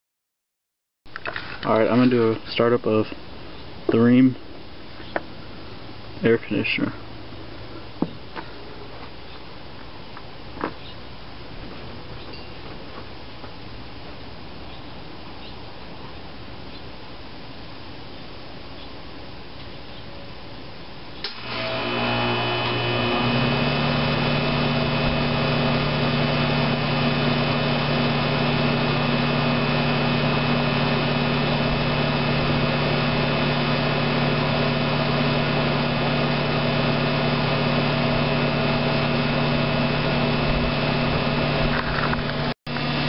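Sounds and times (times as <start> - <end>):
air conditioner running hum: 21.3 - 43.0.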